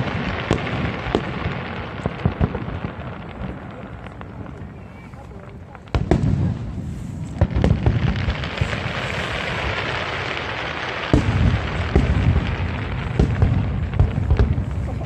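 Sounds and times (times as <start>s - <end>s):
fireworks crackling: 0.0s - 15.0s
fireworks deep bangs: 0.0s - 15.0s.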